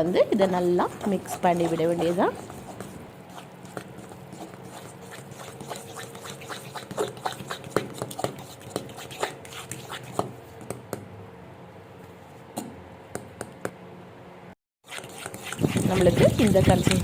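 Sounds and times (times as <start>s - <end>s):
wet squelching batter: 0.0s - 10.4s, 14.9s - 17.0s.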